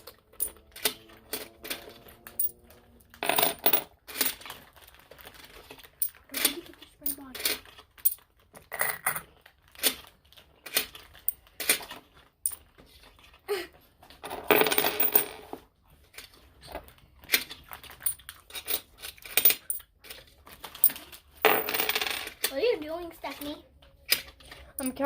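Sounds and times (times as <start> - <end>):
coins clinking: 0.0 - 4.6, 6.0 - 9.2, 14.2 - 15.5, 18.0 - 19.8, 20.8 - 22.4.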